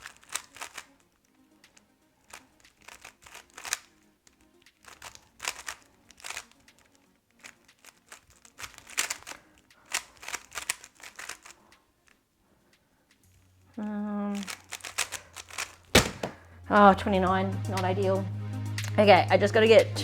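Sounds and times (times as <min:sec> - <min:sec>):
speed cube plastic clicks: 0:00.0 - 0:12.2, 0:14.3 - 0:16.4
faint background music: 0:00.0 - 0:20.0.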